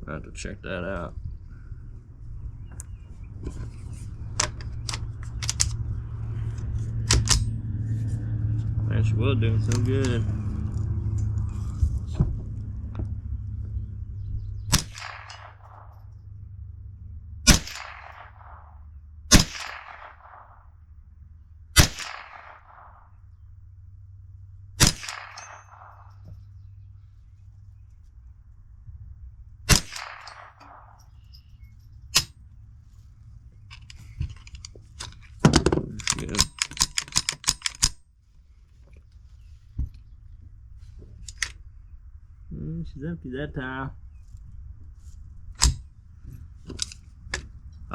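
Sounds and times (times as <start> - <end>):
gunshots: 14.7 - 16.1, 17.4 - 20.7, 21.8 - 23.2, 24.8 - 26.3, 29.7 - 31.2
bullet clanging on steel target: 14.7 - 16.4, 17.5 - 20.6, 24.8 - 26.9, 29.7 - 32.4.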